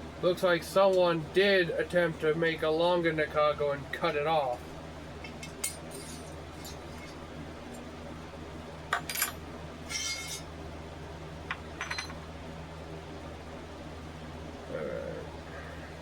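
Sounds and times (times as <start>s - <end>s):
steady low hum: 0.0s - 16.0s
metal parts clinking: 9.9s - 10.4s.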